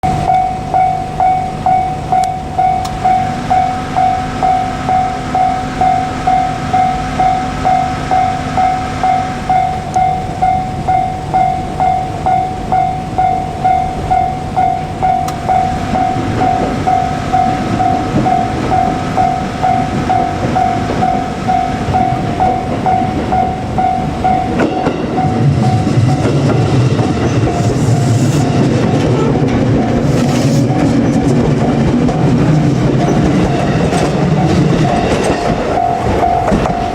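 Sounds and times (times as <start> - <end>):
level crossing warning bell ringing: 0.0 - 36.9
train rumble: 0.0 - 36.9.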